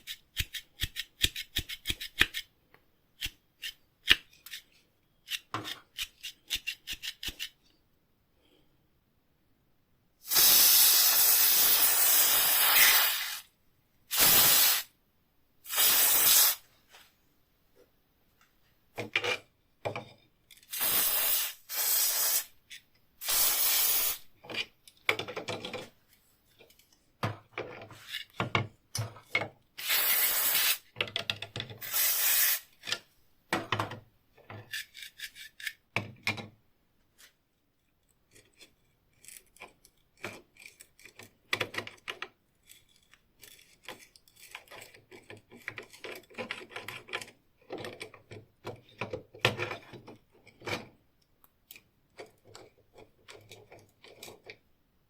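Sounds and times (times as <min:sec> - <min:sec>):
tool clicks and knocks: 0:24.5 - 0:25.9, 0:31.0 - 0:31.8.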